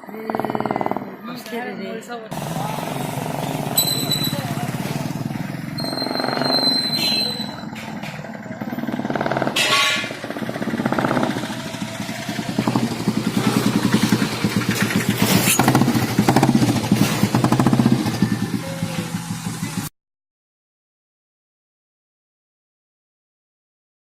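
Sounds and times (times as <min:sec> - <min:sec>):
motorcycle engine revving: 0:00.2 - 0:01.2, 0:02.3 - 0:19.9.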